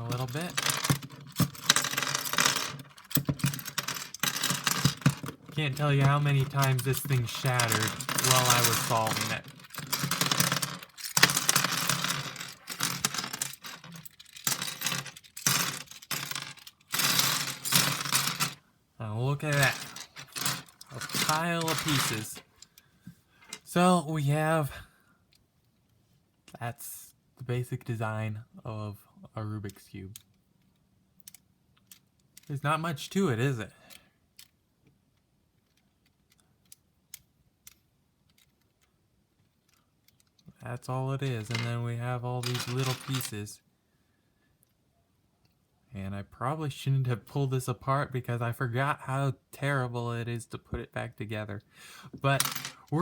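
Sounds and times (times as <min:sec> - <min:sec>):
plastic cube pieces clattering: 0:00.0 - 0:18.6, 0:19.4 - 0:22.6, 0:41.3 - 0:41.8, 0:42.4 - 0:43.5, 0:52.1 - 0:53.0.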